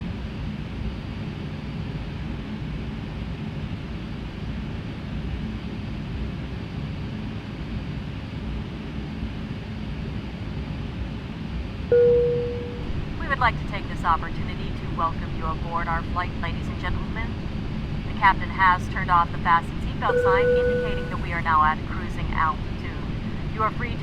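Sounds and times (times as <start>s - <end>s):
low hum: 11.9s - 24.0s.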